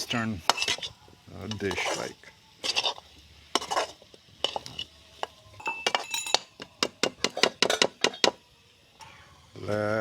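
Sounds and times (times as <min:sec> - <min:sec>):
metal spoon scraping pot: 0:00.4 - 0:06.5.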